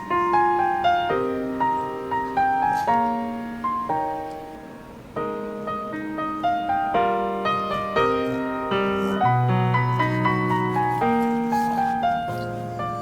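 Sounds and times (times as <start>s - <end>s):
gentle piano music: 0.0s - 13.0s.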